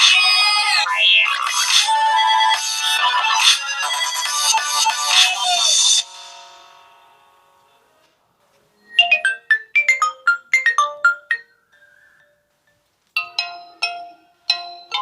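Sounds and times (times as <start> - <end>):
phone ringtone notes: 8.9 - 12.5.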